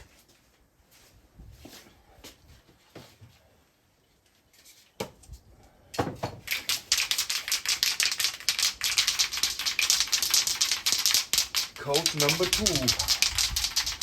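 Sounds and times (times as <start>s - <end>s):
spray can rattling: 6.4s - 14.0s.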